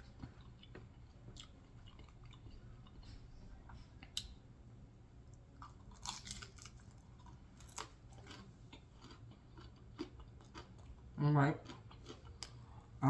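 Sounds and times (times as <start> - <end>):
crunches of crispy crust: 5.6 - 10.7
close chewing: 5.6 - 12.7.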